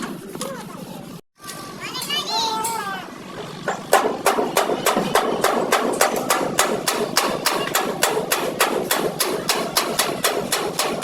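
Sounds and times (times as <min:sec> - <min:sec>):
rapid hammering: 0:03.6 - 0:11.0.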